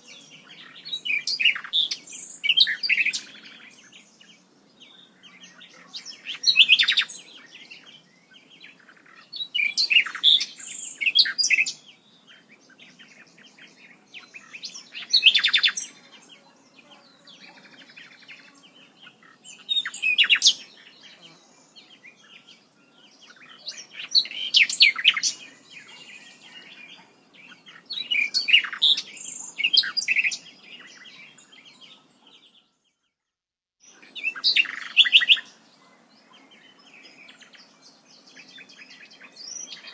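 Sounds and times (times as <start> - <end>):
songbird chirping and whistling: 0.0 - 4.1, 5.0 - 16.0, 19.0 - 33.1, 33.8 - 35.6.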